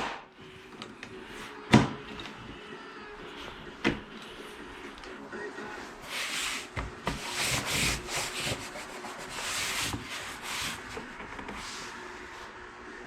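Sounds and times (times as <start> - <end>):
hand rubbing a surface: 5.8 - 12.4.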